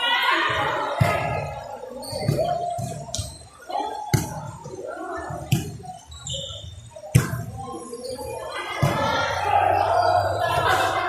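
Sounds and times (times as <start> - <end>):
volleyball hits: 0.5 - 1.5, 7.1 - 7.6
people shouting: 8.8 - 11.0.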